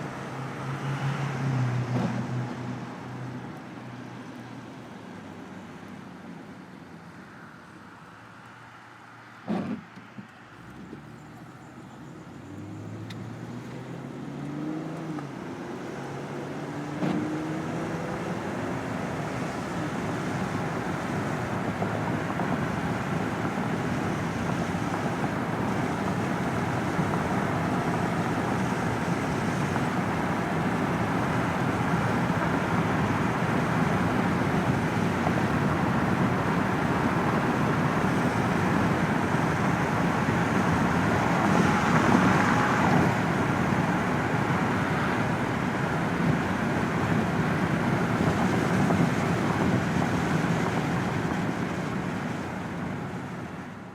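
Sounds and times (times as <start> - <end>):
road and tyre noise: 0.0 - 53.9
car engine accelerating: 10.5 - 52.3.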